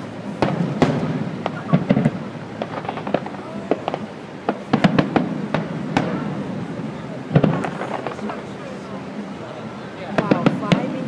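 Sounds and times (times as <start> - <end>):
fireworks bangs and crackles: 0.0 - 11.0.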